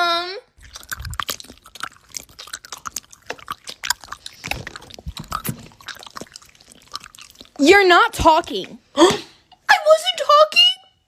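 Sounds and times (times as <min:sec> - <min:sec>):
crunchy chewing: 0:00.6 - 0:08.6
mouth clicks: 0:00.6 - 0:08.8.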